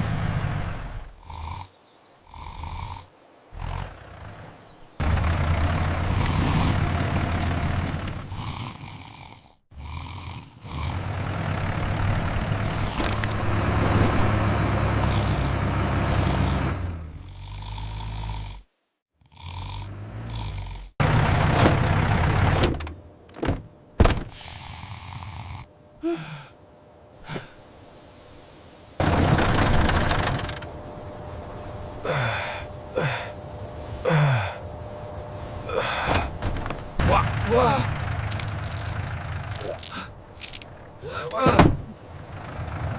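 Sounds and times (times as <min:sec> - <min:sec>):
toy tractor engine: 0:14.5 - 0:16.9, 0:37.2 - 0:40.7.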